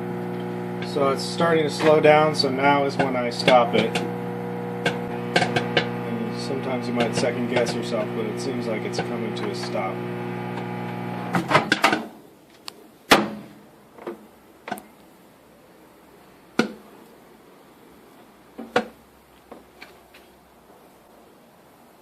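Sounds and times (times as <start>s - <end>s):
microwave oven humming: 0.0s - 11.7s
popcorn popping: 0.0s - 12.1s.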